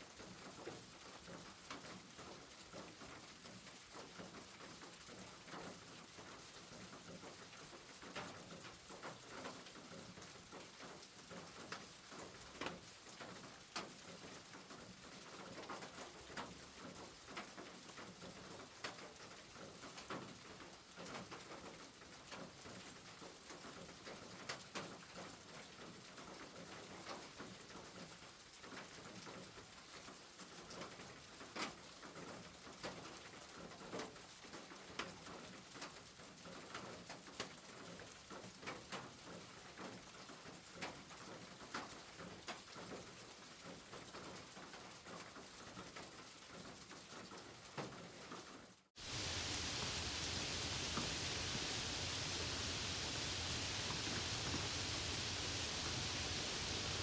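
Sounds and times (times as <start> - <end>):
raindrops ticking: 0.2 - 57.0
rain hissing: 48.9 - 57.0.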